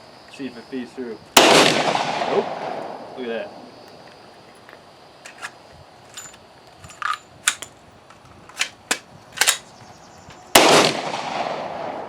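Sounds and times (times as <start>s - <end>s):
pistol metallic clicks: 4.6s - 9.7s.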